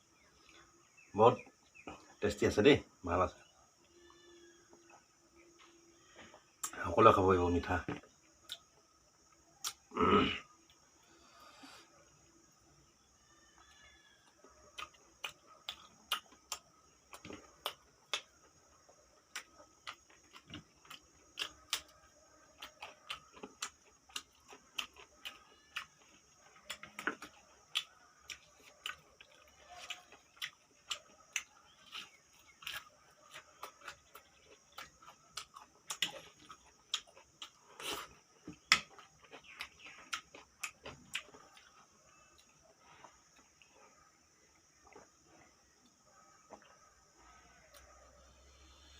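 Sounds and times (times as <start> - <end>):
chewing with mouth clicks: 14.5 - 43.8.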